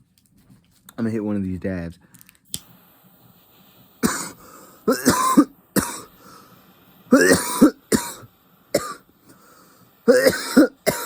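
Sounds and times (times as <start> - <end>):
man coughing hard: 4.0 - 6.1, 7.1 - 9.0, 10.1 - 11.0.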